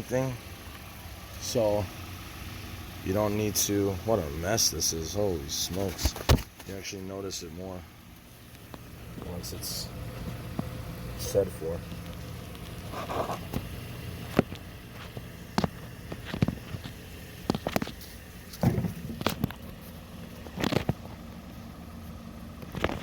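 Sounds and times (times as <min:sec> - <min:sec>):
car engine idling: 0:00.0 - 0:23.0
sharp clicks and knocks: 0:14.3 - 0:19.8.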